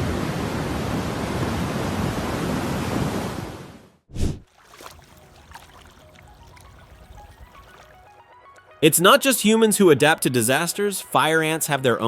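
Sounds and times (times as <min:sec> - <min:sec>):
short loud whoosh: 0:04.1 - 0:04.4.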